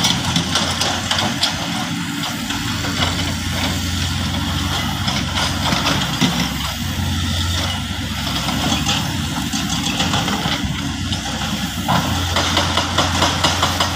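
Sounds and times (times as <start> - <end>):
heavy diesel engine running: 0.0 - 13.9.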